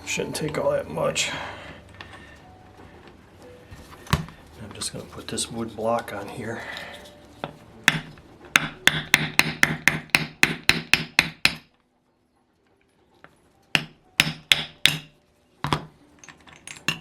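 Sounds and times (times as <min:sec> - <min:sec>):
hammer tapping on wood block: 0:07.4 - 0:11.7, 0:13.8 - 0:15.1.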